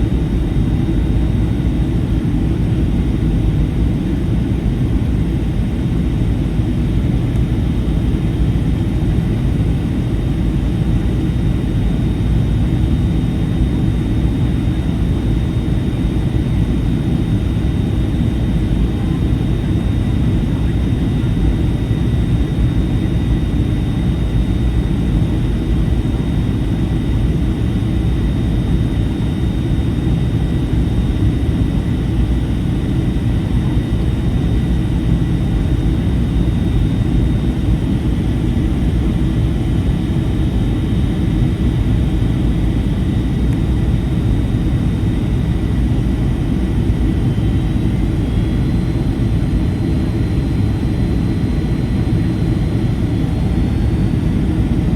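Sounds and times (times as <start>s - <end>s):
airflow rush in cabin: 0.0s - 54.9s
jet engine hum: 0.0s - 54.9s.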